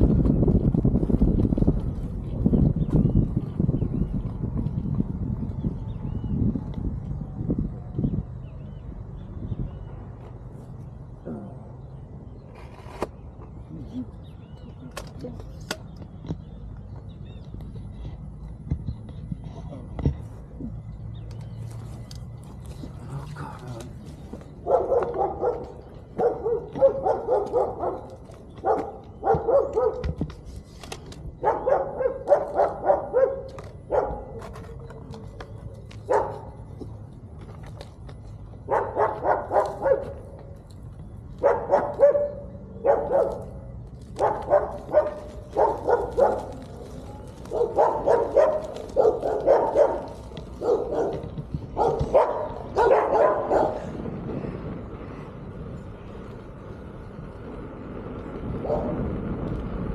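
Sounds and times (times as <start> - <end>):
dog barking: 24.6 - 30.1, 31.4 - 34.4, 36.1 - 36.5, 38.7 - 40.2, 41.4 - 43.5, 44.2 - 46.6, 47.5 - 51.2, 51.8 - 53.9, 58.6 - 59.0.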